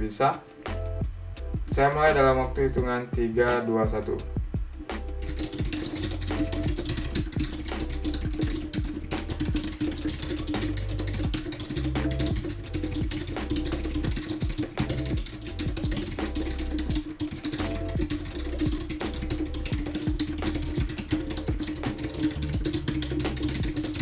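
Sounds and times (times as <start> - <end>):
background music with bass line: 0.0 - 24.0
rapid keyboard typing: 5.2 - 24.0.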